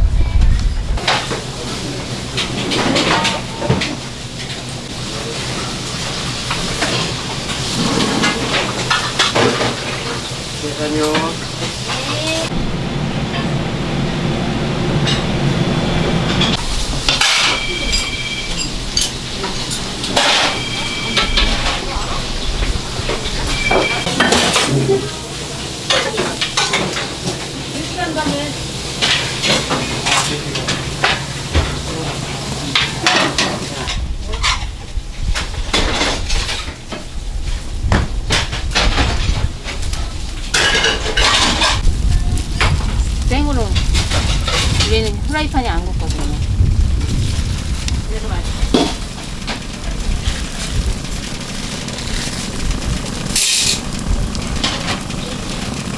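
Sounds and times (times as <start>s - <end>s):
dense rush of noise: 0.0s - 2.2s, 41.3s - 55.9s
pans and utensils clinking: 1.0s - 12.5s, 16.4s - 34.8s, 38.3s - 41.8s, 53.3s - 54.0s
food sizzling in a pan: 40.0s - 55.9s.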